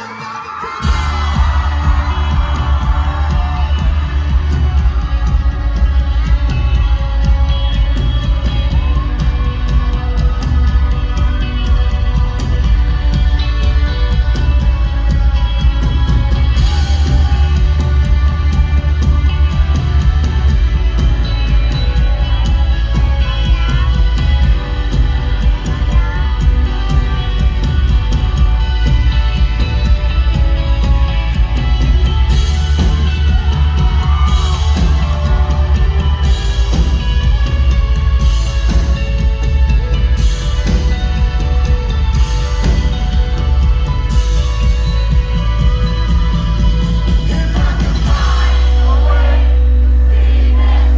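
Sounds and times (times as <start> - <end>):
live rock band playing: 0.0 - 48.9
person singing: 46.6 - 50.9.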